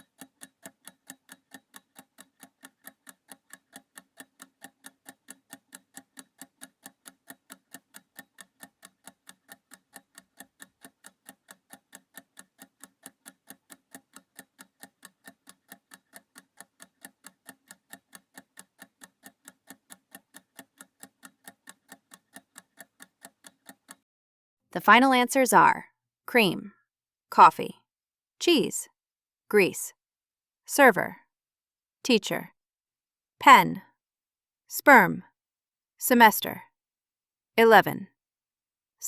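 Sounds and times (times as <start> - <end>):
countdown timer ticking: 0.0 - 24.0, 24.8 - 26.7.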